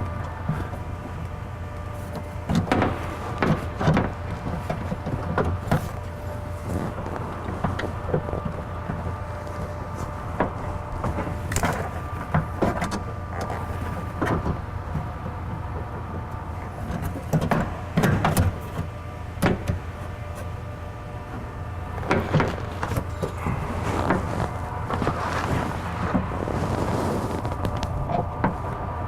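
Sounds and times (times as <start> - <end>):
steady low hum: 0.0 - 29.0.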